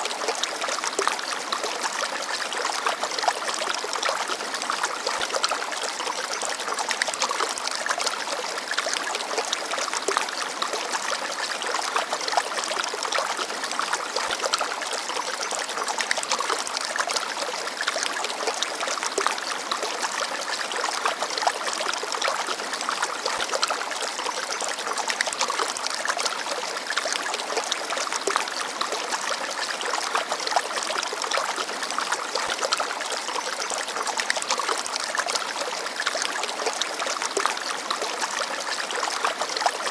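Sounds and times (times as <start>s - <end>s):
stream babbling: 0.0s - 39.9s.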